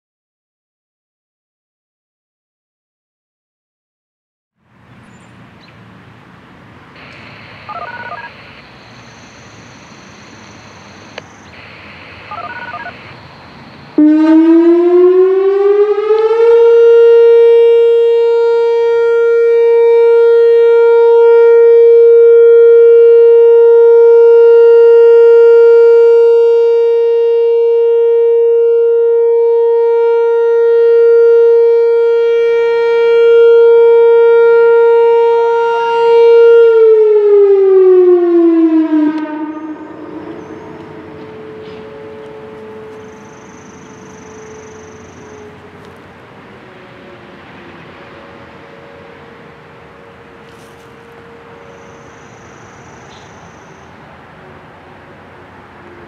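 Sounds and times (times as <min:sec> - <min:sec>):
warning siren steady tone: 0:07.0 - 0:56.0.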